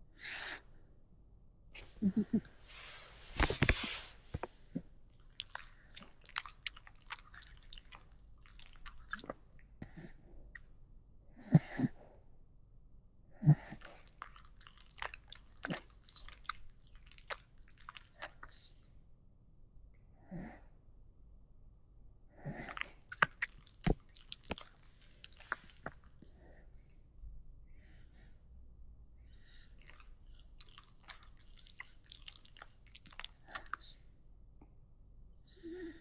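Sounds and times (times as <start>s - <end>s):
wet mouth clicks and lip-smacking: 5.2s - 10.6s, 13.7s - 18.8s, 22.7s - 26.3s, 29.6s - 34.0s.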